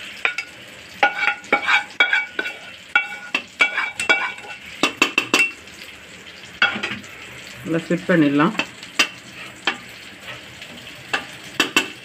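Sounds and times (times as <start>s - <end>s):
metal spoon clinking on steel pot: 0.2s - 5.6s.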